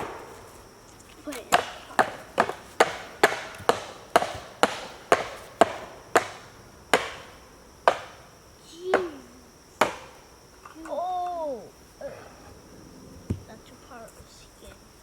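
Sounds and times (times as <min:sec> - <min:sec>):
hammer striking a nail: 0:01.5 - 0:08.2, 0:09.8 - 0:10.2.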